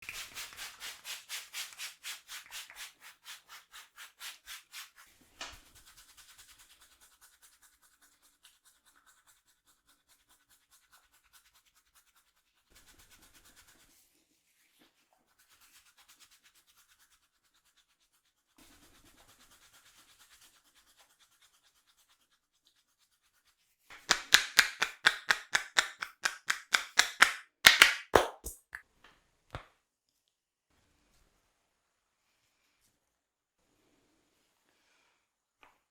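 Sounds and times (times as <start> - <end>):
hands scratching hair: 0.0 - 7.1, 23.9 - 28.8
sharp snaps: 23.9 - 28.8.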